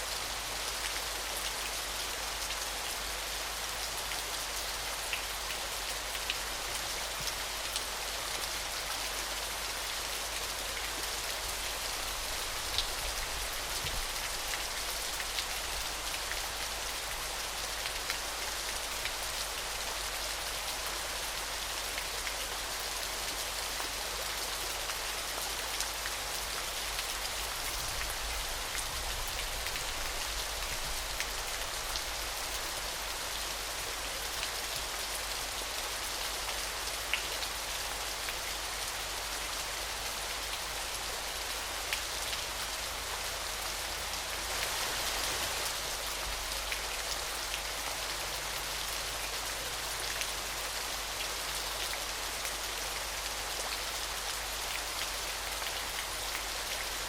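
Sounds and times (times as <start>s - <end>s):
waterfall hiss: 42.3s - 51.4s.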